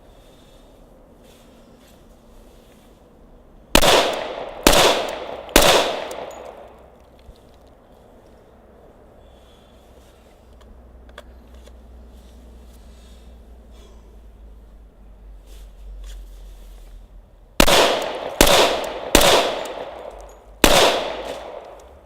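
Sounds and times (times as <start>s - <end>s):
pistol shots echoing: 3.8s - 6.8s, 17.6s - 21.9s.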